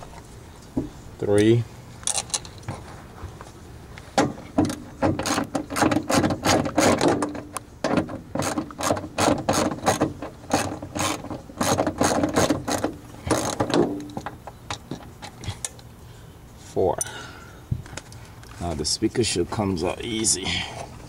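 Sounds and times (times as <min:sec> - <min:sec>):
hand ratchet clicking rapidly: 0:08.4 - 0:13.6.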